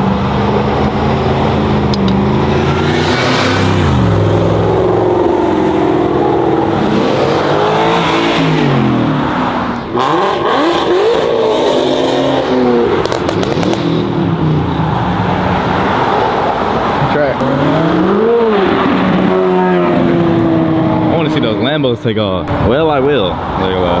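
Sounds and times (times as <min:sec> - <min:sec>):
car engines revving: 0:00.0 - 0:24.0
sharp pops: 0:13.0 - 0:13.9.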